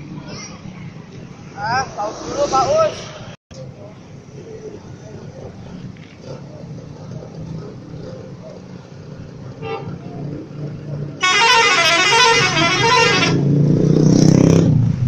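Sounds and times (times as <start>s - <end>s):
bus musical horn warbling: 9.6s - 10.0s, 11.2s - 13.5s.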